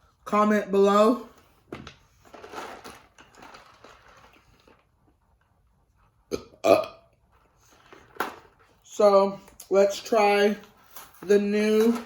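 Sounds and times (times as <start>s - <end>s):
person burping: 6.3s - 7.2s.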